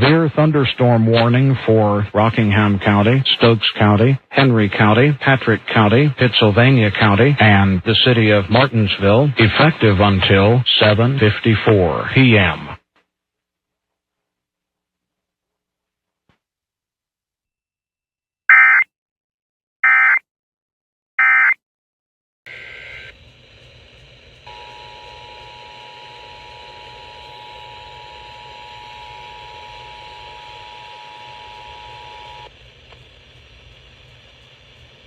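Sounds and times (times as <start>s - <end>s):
radio hiss: 0.0s - 12.8s.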